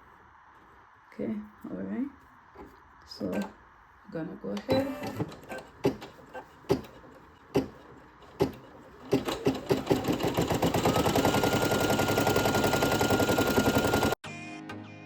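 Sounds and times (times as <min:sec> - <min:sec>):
embroidery machine stitching: 0:03.2 - 0:03.6, 0:04.6 - 0:14.2.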